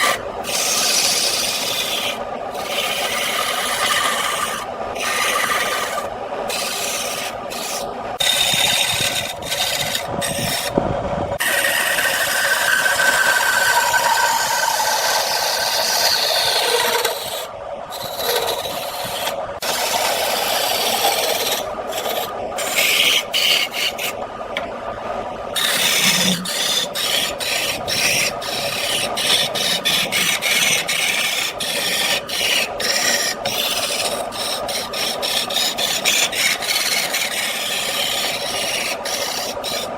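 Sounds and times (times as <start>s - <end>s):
wood lathe scraping: 0.0s - 10.8s, 11.4s - 24.2s, 25.6s - 39.9s.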